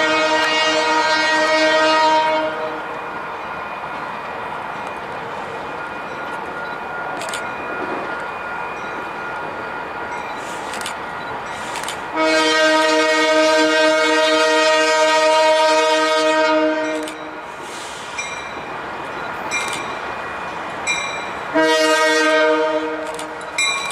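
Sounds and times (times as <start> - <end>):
locomotive air horn: 0.0 - 2.9, 11.8 - 18.0, 21.5 - 23.4
passing train: 0.0 - 23.9.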